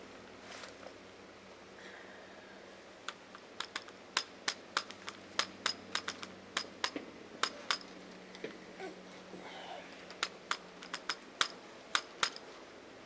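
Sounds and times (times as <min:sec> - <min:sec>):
faint steady hum: 0:00.0 - 0:13.0
sharp metallic clicks and clinks: 0:03.1 - 0:08.0, 0:10.1 - 0:12.4.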